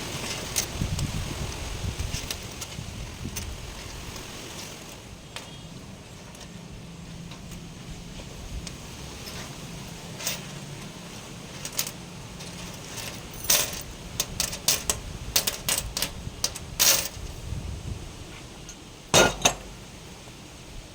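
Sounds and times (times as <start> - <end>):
light metallic clinks and knocks: 2.0 - 17.3, 18.6 - 19.9.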